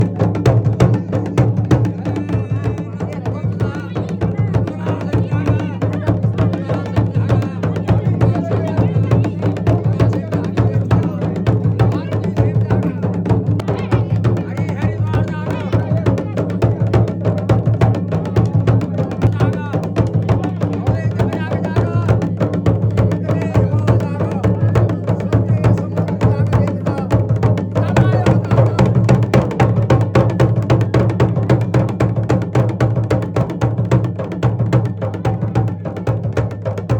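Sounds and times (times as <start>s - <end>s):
drums playing fast rhythm: 0.0s - 36.9s.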